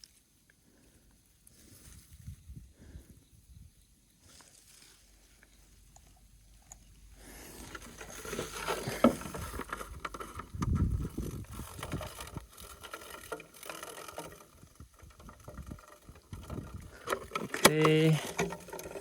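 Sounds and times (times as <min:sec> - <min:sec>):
rustling and handling noise: 0:04.2 - 0:19.0.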